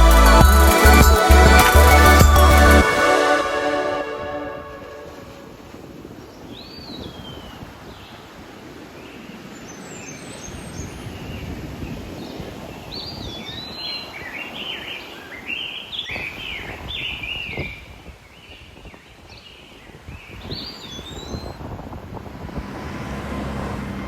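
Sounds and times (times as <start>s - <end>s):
ocean surf washing: 2.8s - 6.0s.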